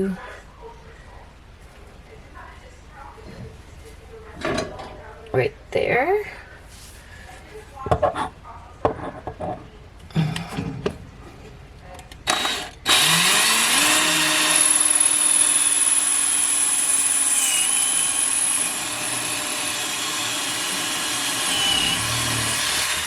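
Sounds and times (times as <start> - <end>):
power drill boring into tile: 12.3 - 23.0.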